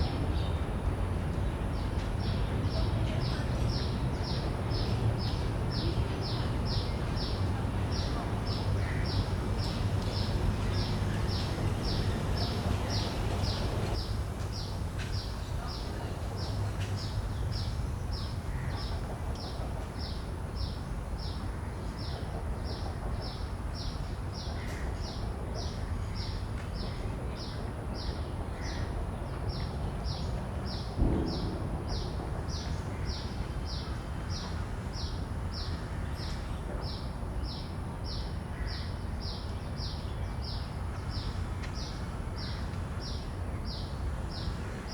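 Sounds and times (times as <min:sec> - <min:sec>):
cicadas calling: 0:08.0 - 0:14.1
low thump: 0:31.0 - 0:33.2.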